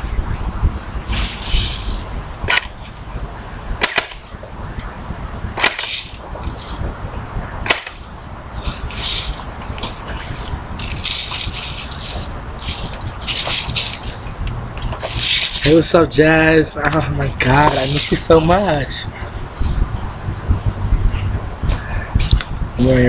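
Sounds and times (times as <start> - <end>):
rustling handling noise: 1.1 - 3.1, 3.8 - 4.5, 5.6 - 7.0, 7.7 - 16.0, 17.5 - 18.9
sharp cracks: 1.2 - 3.0, 3.8 - 4.5, 5.6 - 6.9, 7.6 - 15.8.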